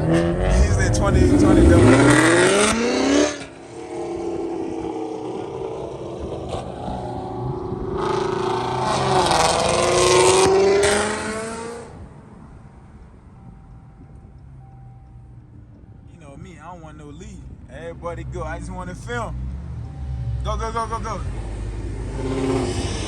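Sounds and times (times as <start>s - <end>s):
muscle car engine revving: 0.0s - 12.0s, 17.9s - 23.0s.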